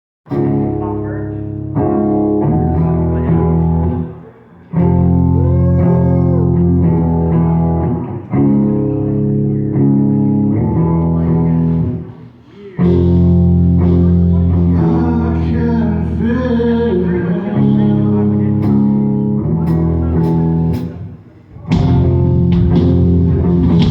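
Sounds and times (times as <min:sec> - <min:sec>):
guitar playing sustained chords: 0:00.3 - 0:12.2, 0:12.8 - 0:23.9
sliding guitar notes: 0:00.3 - 0:23.9
live band music: 0:17.6 - 0:23.9.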